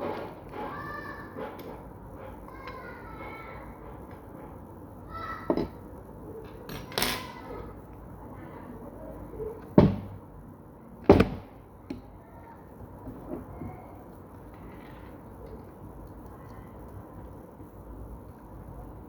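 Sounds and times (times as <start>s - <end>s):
knocks or thumps: 9.8s - 10.2s.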